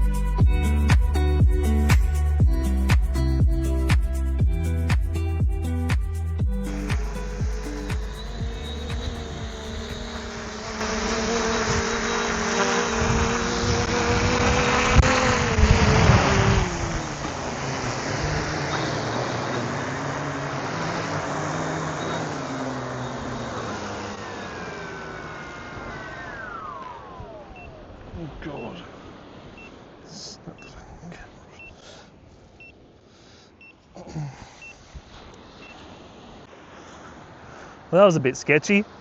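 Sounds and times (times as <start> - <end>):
drone propellers whining: 0.0 - 28.1
wind-like rushing and rumbling: 7.4 - 10.8, 13.0 - 19.4.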